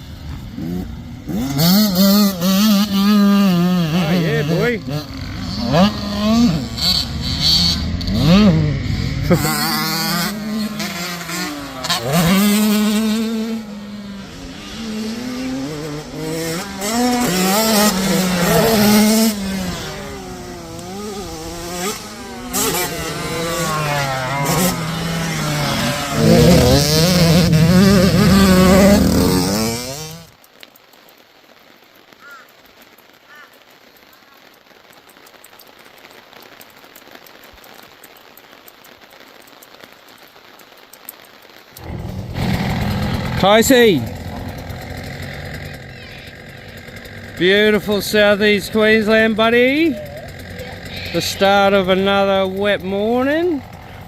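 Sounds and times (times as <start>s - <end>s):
motocross bike engines revving: 0.0s - 30.3s, 41.8s - 54.0s
faint hiss: 0.0s - 54.0s.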